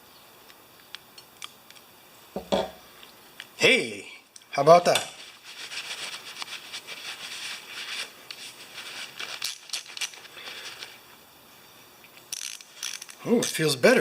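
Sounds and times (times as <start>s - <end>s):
ratchet pawl clicking rapidly: 12.3s - 13.2s.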